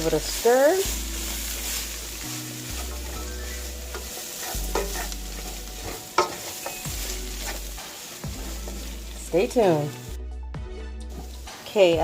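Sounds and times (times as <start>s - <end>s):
vegetables sizzling in a frying pan: 0.0s - 10.2s, 11.1s - 12.0s
utensil scraping and knocking pan: 3.8s - 8.9s.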